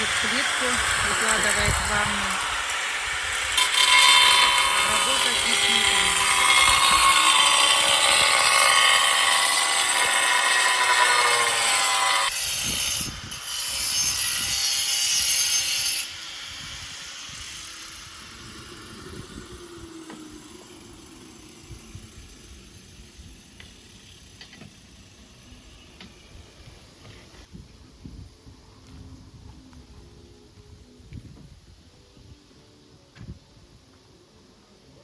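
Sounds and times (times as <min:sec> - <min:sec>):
power tool cutting tile: 0:00.0 - 0:22.1.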